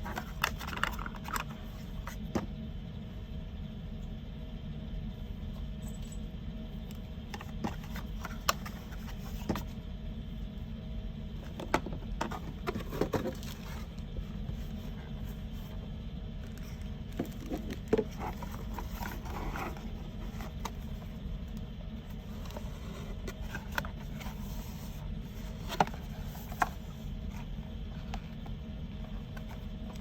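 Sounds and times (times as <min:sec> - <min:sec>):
packaging rustling and scraping: 0:00.0 - 0:02.2, 0:07.3 - 0:09.7, 0:11.4 - 0:15.8, 0:16.5 - 0:21.2, 0:22.1 - 0:28.5
low background hum: 0:00.0 - 0:30.0.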